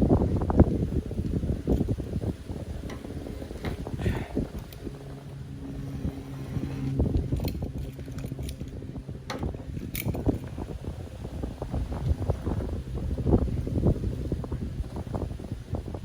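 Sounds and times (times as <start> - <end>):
motor hum: 0.0 - 16.0
wind buffeting microphone: 0.0 - 16.0.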